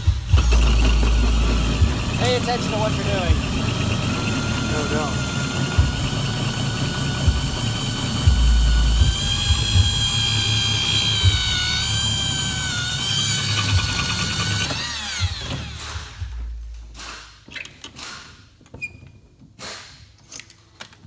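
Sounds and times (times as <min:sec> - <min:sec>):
power tool whining: 0:00.0 - 0:16.4.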